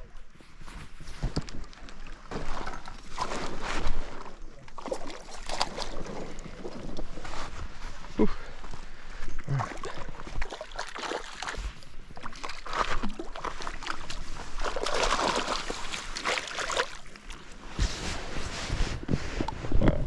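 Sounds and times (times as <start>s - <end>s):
fish splashing in water: 9.6s - 11.6s, 12.2s - 17.4s.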